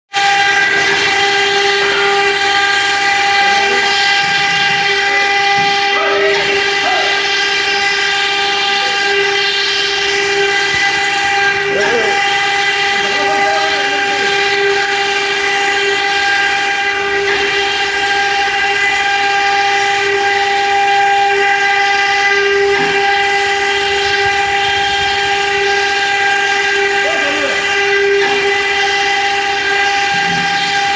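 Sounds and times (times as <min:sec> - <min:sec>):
machine spindles whining: 0:00.1 - 0:30.9.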